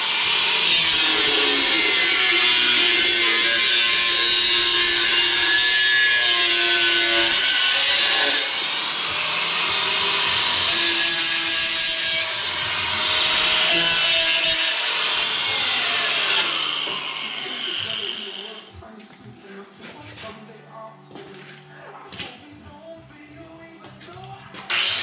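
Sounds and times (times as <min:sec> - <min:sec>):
power tool grinding sheet steel: 0:00.0 - 0:18.7, 0:24.7 - 0:25.0
faint background music: 0:00.2 - 0:25.0.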